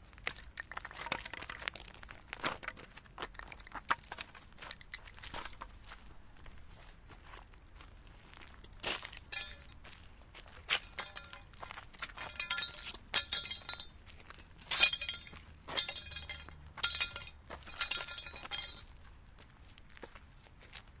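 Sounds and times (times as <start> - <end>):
small hard objects clinking: 0.0 - 5.6, 8.5 - 9.8, 10.7 - 18.9.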